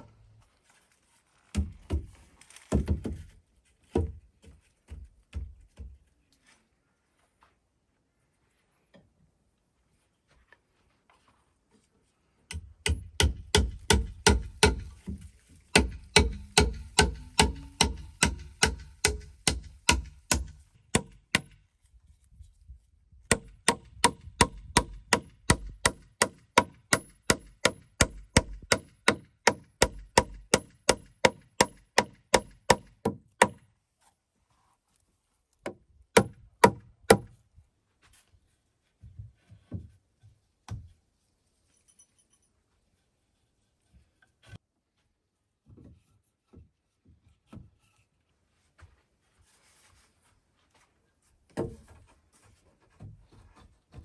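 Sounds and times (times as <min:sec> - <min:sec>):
hand tool striking wood: 0:12.5 - 0:21.6, 0:23.3 - 0:33.7, 0:35.6 - 0:37.4.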